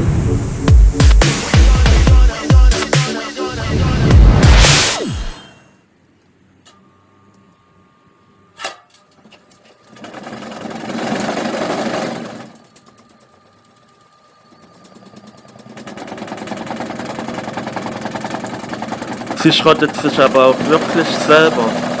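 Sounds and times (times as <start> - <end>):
washing machine rattling: 9.7 - 13.3, 14.4 - 22.0.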